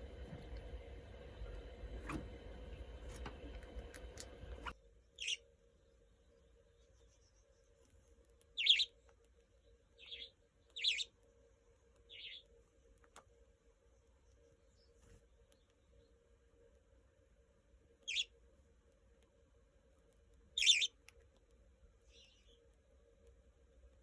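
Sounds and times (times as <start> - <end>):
small birds chirping: 0.0 - 16.6, 17.9 - 24.0
faint steady hum: 0.0 - 24.0.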